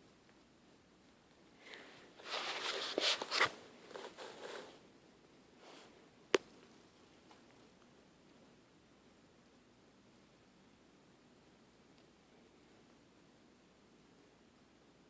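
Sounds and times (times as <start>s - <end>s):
rustling and scuffing: 2.2s - 4.8s.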